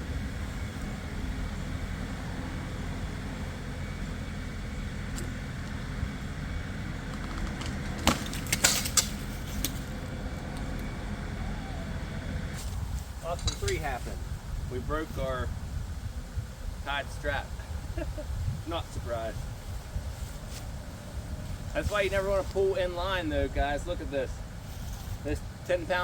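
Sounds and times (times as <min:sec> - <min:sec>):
tractor diesel engine under load: 0:00.0 - 0:26.0
metallic clanks of rigging: 0:13.3 - 0:13.9.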